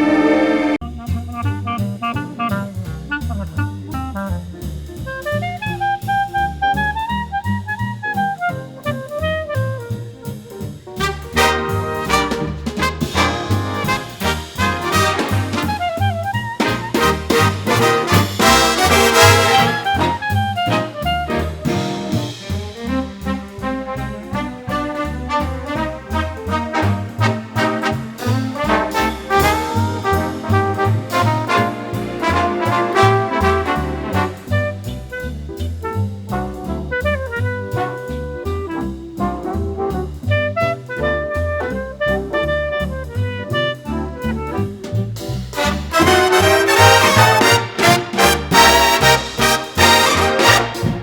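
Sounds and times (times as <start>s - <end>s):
brass horns playing melody: 0.0s - 0.8s, 11.0s - 38.8s, 39.5s - 44.6s, 45.5s - 51.0s
steady beat: 0.0s - 7.9s, 8.5s - 51.0s
bass line: 0.0s - 51.0s
instrumental swing jazz: 0.0s - 51.0s.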